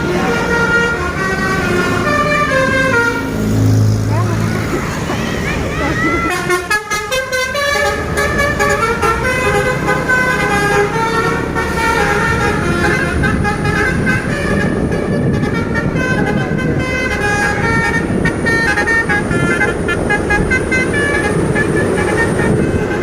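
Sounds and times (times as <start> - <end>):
multi-tone musical bus horn: 0.0 - 3.7, 6.0 - 23.0.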